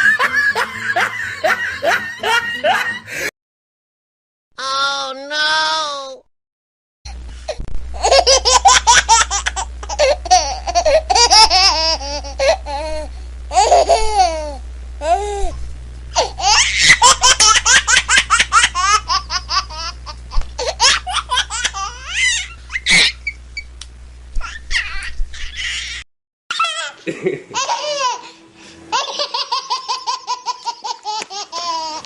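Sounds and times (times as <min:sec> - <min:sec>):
low steady hum: 0:07.1 - 0:26.0
small child laughing: 0:08.0 - 0:15.5, 0:16.2 - 0:23.4, 0:24.4 - 0:32.0.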